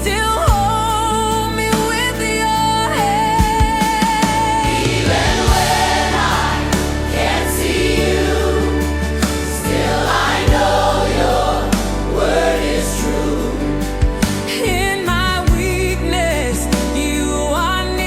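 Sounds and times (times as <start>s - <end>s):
held bass and chords: 0.0s - 18.0s
gospel choir singing: 4.2s - 15.3s.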